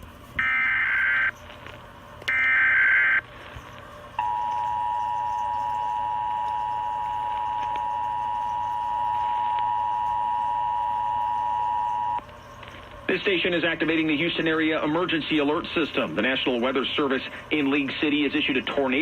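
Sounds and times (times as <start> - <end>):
dual-tone alarm: 0.4 - 1.4, 2.3 - 3.3, 4.2 - 12.2
warbling digital data tones: 2.3 - 12.2.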